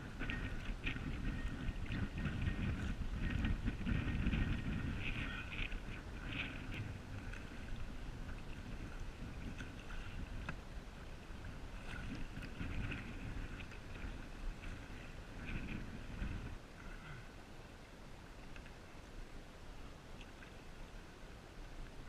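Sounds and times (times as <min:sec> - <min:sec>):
steady low rumble: 0:00.0 - 0:20.0
paddle splashing water: 0:00.0 - 0:22.0.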